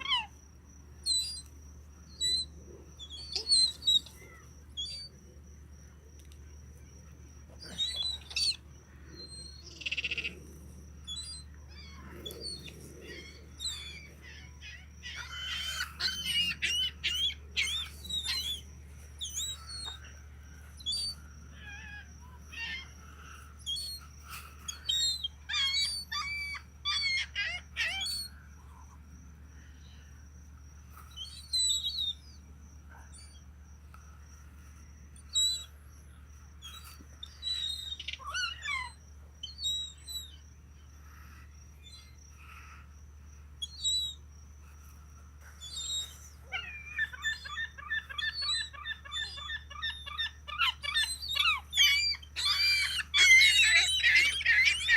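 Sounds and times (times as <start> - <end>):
gulls squawking: 11.9 - 18.6, 46.0 - 54.9.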